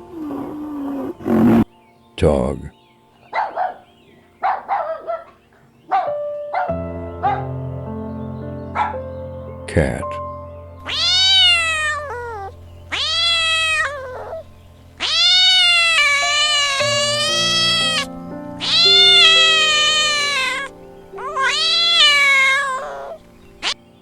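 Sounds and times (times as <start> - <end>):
soft background music: 0.0 - 24.0
cat meowing: 10.8 - 23.8.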